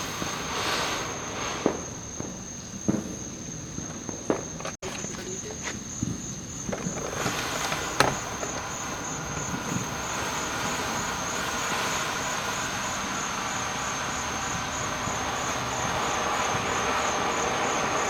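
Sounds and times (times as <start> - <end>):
firework fountain hissing: 0.0 - 18.0
insects chirping: 0.0 - 18.0.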